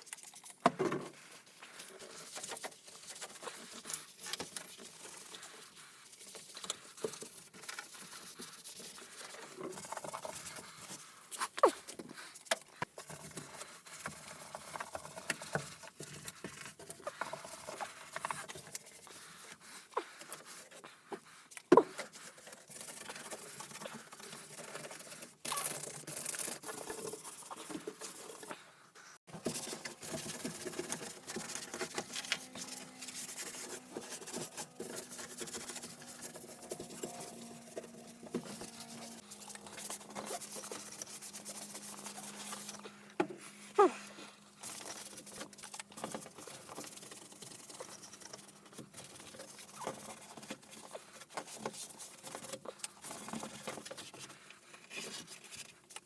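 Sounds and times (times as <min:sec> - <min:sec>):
rubbing and scraping while cleaning: 0:00.0 - 0:56.0.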